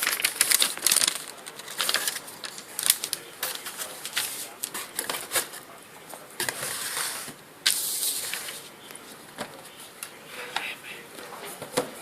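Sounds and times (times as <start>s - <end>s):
packaging rustling: 0.0s - 5.5s.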